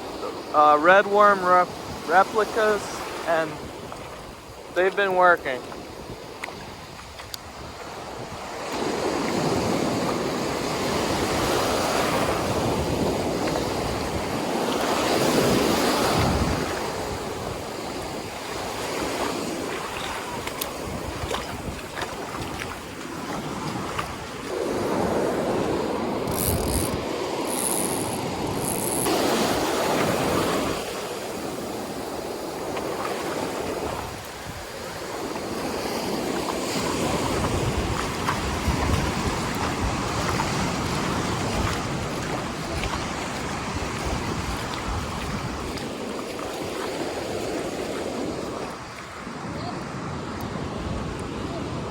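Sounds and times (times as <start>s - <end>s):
waves breaking on beach: 0.0s - 51.9s
wind gusting against microphone: 5.6s - 51.9s.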